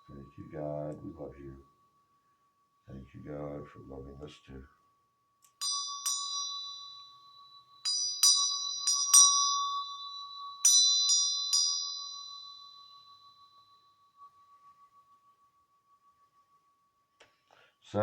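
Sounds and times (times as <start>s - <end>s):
faint steady tone: 0.0s - 18.0s
small high-pitched bells struck: 4.8s - 17.4s.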